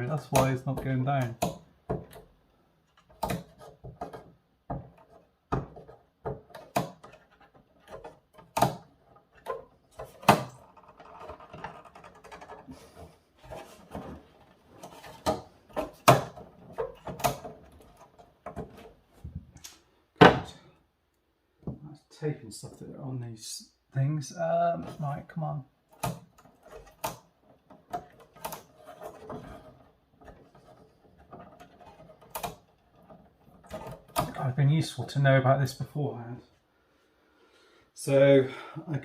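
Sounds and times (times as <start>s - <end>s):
rustling: 7.0s - 20.6s.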